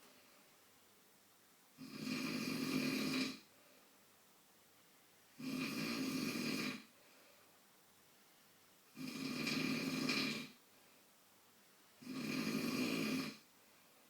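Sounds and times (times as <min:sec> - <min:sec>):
quiet breathing: 0:00.0 - 0:00.8, 0:01.8 - 0:04.2, 0:04.9 - 0:14.0
man snoring: 0:01.8 - 0:03.5, 0:05.4 - 0:06.9, 0:08.9 - 0:10.6, 0:12.0 - 0:13.4.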